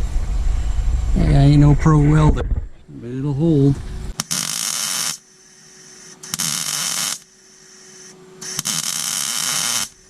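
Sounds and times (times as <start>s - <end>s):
faint steady hum: 0.0s - 10.0s
arc welder crackling hiss: 4.1s - 10.0s.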